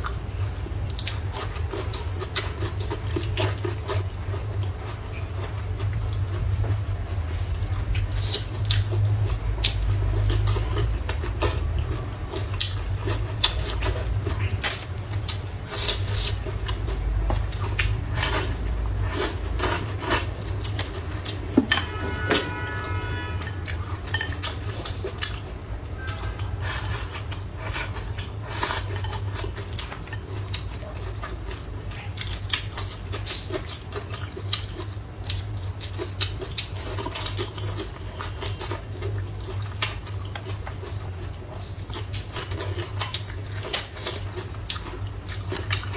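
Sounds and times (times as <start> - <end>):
chopsticks clinking against bowls: 23.6 - 24.9.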